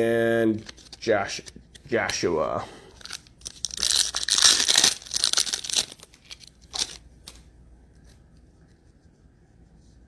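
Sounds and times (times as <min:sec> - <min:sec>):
wrapper rustle: 0:03.0 - 0:07.0
card pack wrapper tearing and crinkling: 0:03.0 - 0:07.4.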